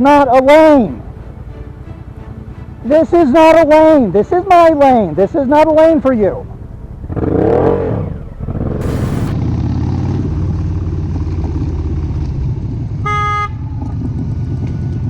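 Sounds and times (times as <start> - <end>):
vehicle engine running: 1.0 - 15.0
brief rush of noise: 8.7 - 9.4
car horn honk: 13.0 - 13.7.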